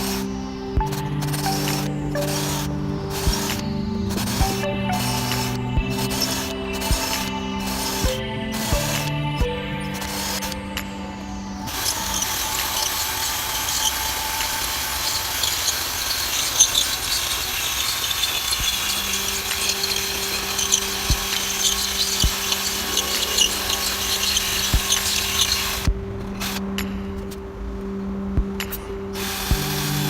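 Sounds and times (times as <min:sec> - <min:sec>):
power tool crackling: 0:00.0 - 0:09.2, 0:11.7 - 0:26.6.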